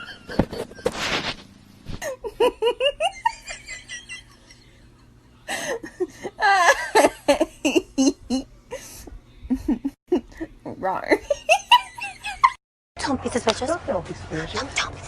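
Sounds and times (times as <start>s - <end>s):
person laughing: 0.0s - 1.0s, 2.0s - 4.6s, 5.5s - 10.5s.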